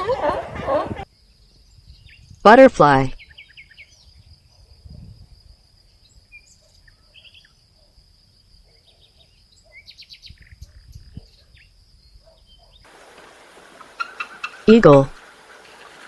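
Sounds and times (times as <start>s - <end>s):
bird chirps: 3.2s - 4.6s, 6.0s - 7.9s, 8.7s - 12.8s.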